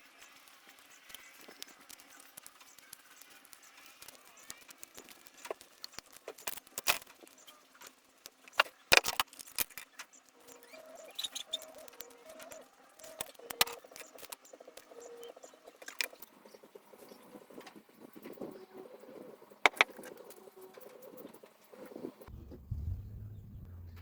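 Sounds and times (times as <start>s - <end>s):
clicks and knocks on wood: 19.7s - 20.0s.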